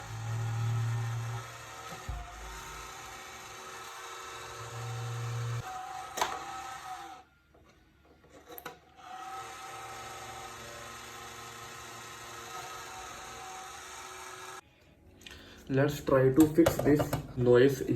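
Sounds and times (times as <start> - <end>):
fan grinding rubbing noise: 0.0 - 5.6.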